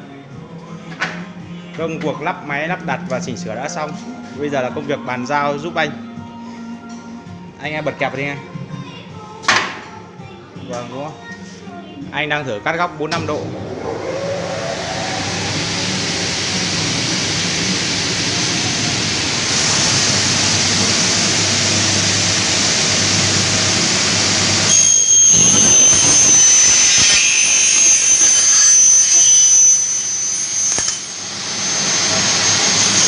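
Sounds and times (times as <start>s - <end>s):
saw cutting aluminium whine: 13.1s - 33.0s
saw motors running: 13.2s - 33.0s.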